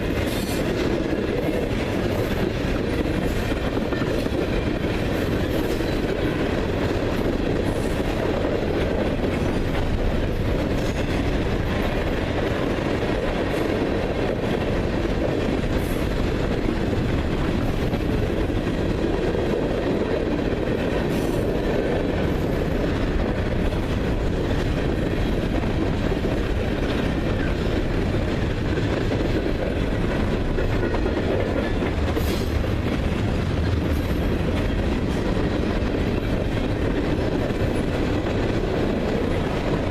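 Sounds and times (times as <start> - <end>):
train wheels on track: 0.0 - 39.9.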